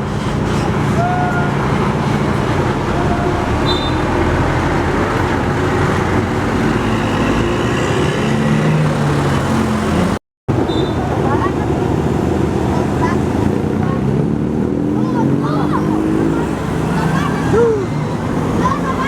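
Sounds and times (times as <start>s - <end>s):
bus diesel engine running: 0.0s - 7.4s
tyre and road noise: 0.0s - 19.0s
short high tone: 2.8s - 4.4s.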